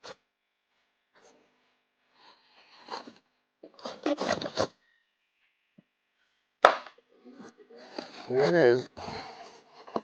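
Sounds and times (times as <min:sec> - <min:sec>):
cardboard tearing and scraping: 0:03.8 - 0:04.7.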